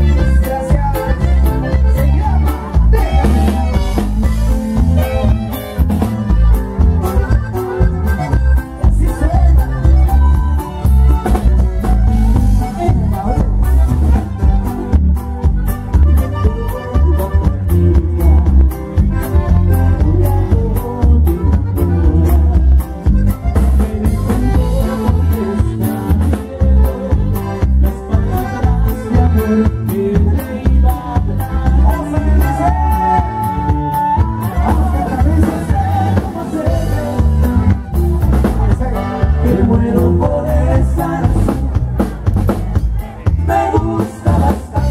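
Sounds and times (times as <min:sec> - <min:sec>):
band playing instrumental music: 0:00.0 - 0:44.9
heavy bass line: 0:00.0 - 0:44.9
drum beat: 0:19.0 - 0:44.9.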